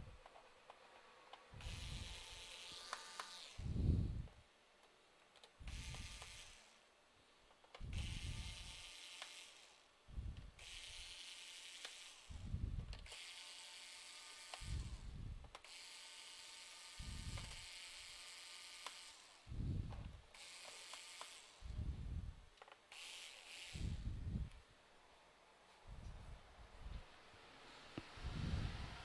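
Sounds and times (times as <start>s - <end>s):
screwdriver ratchet clicks: 5.4s - 6.7s, 7.7s - 9.7s, 10.4s - 12.3s, 14.5s - 19.3s, 20.4s - 21.6s.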